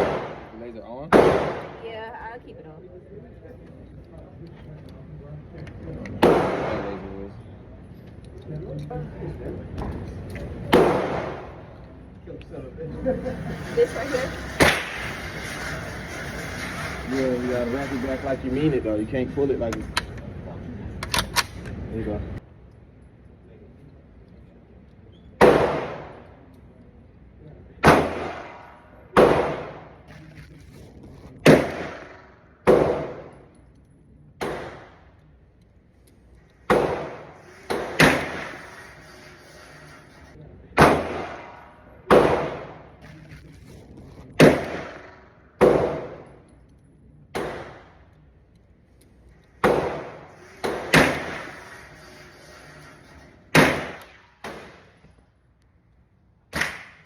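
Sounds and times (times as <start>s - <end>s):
pistol shots echoing: 0.0s - 1.8s, 6.2s - 6.9s, 10.7s - 11.5s, 25.4s - 26.2s, 27.8s - 29.8s, 31.4s - 33.3s, 40.8s - 42.9s, 49.6s - 51.3s.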